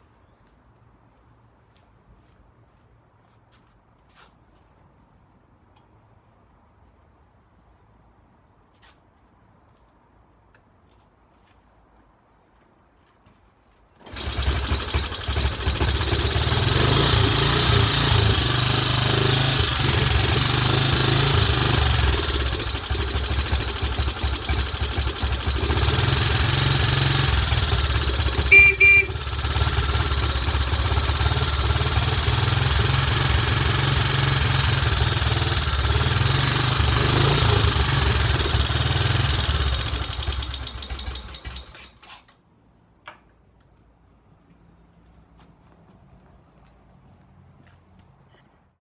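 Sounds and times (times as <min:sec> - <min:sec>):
motorcycle engine idling: 0:14.1 - 0:41.8
short double beep: 0:28.5 - 0:29.2.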